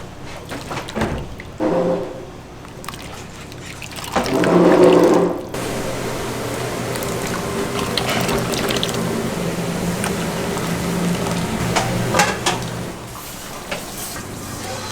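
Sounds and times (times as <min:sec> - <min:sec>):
water running from tap: 0:04.1 - 0:14.9.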